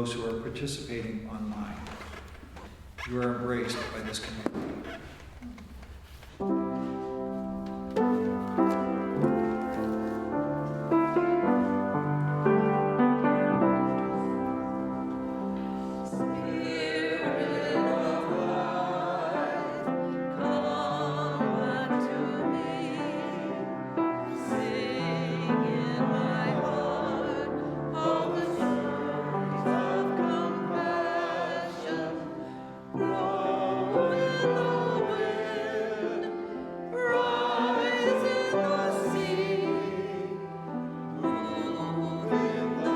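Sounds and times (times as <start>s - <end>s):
piano accompaniment: 6.1s - 42.9s
classical singing voice with vibrato: 14.0s - 42.9s.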